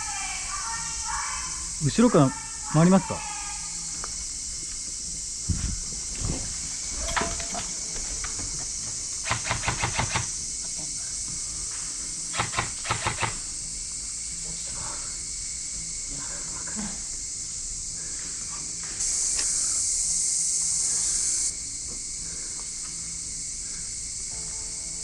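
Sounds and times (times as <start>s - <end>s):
steady high hiss: 0.0s - 25.0s
rapid airsoft gunfire: 9.2s - 10.3s, 12.3s - 13.4s.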